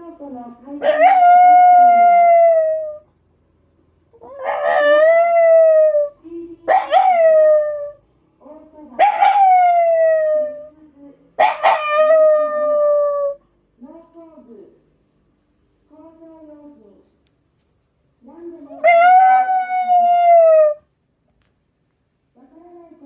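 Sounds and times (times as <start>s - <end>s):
dog howling: 0.8s - 3.0s, 4.2s - 8.0s, 9.0s - 10.7s, 11.4s - 13.4s, 18.7s - 20.8s.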